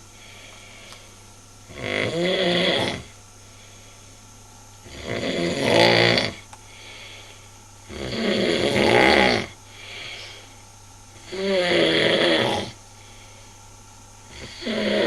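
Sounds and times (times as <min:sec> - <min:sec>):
quiet breathing: 0:00.0 - 0:01.3, 0:03.0 - 0:04.4, 0:06.2 - 0:07.7, 0:09.5 - 0:11.4, 0:12.8 - 0:15.0
person snoring loudly: 0:01.7 - 0:03.1, 0:04.8 - 0:07.1, 0:07.9 - 0:10.3, 0:11.2 - 0:12.8, 0:14.3 - 0:15.0.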